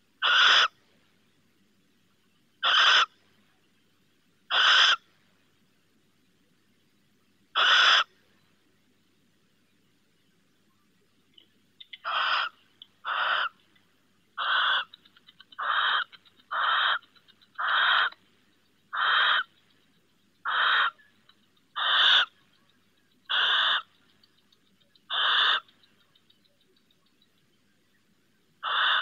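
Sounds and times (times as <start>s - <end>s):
barn owl screeching: 0.2s - 0.7s, 2.6s - 3.1s, 4.5s - 5.0s, 7.6s - 8.1s, 12.0s - 13.6s, 14.4s - 18.2s, 18.9s - 19.5s, 20.4s - 21.0s, 21.8s - 22.4s, 23.3s - 23.9s, 25.1s - 25.7s, 28.6s - 29.0s.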